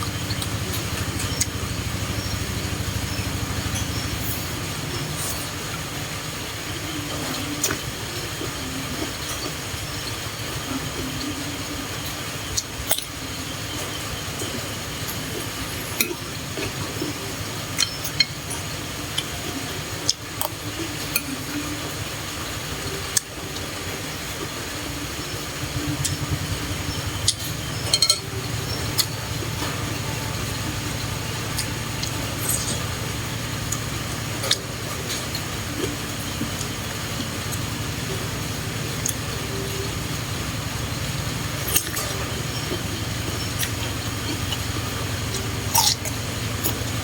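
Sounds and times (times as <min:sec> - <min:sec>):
steady low hum: 0:00.0 - 0:47.0
utensils clinking against dishes: 0:25.8 - 0:37.7.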